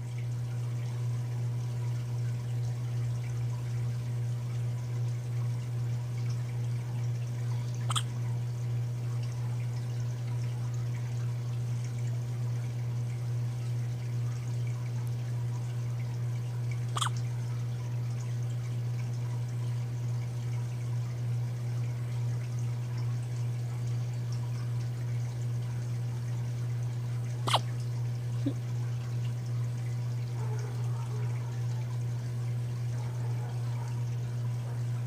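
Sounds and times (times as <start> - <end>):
monkey hiccup: 7.9 - 8.1, 17.0 - 17.2.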